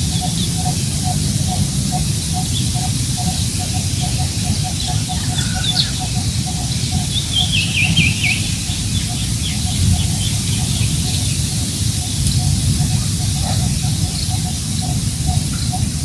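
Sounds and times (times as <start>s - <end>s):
wind rumbling on microphone: 0.0s - 16.0s
high falling bird chirps: 3.2s - 11.7s.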